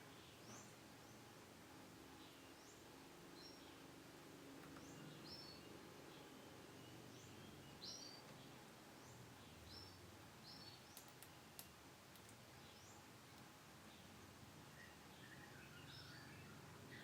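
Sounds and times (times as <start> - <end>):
sharp clicks: 10.9 - 12.4.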